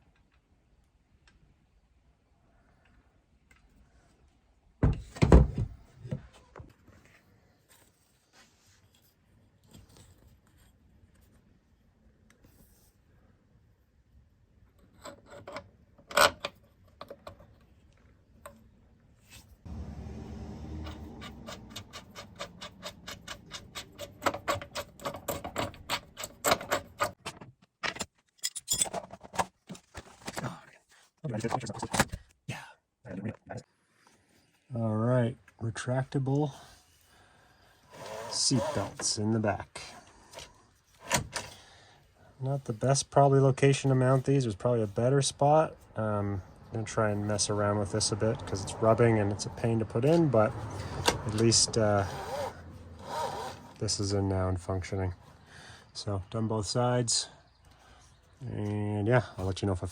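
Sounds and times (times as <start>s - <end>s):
irregular clicks and rattles: 20.7s - 30.4s.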